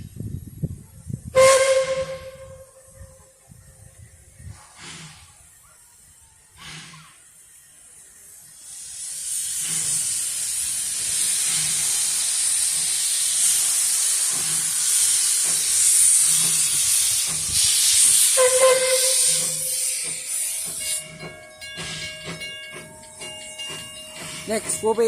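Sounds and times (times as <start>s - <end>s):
steam locomotive puffing: 1.4s - 2.6s, 4.4s - 5.6s, 6.4s - 25.0s
steam whistle: 1.4s - 2.9s, 17.6s - 20.2s
loud steam hiss: 3.5s - 25.0s.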